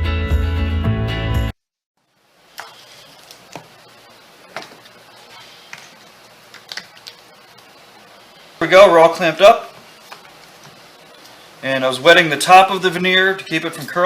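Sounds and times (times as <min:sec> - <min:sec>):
background music: 0:00.0 - 0:01.5.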